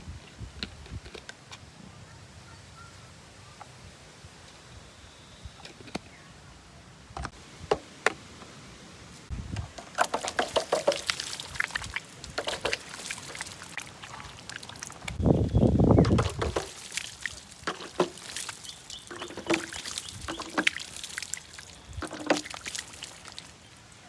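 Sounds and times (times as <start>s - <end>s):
water pouring and splashing: 9.8s - 24.0s.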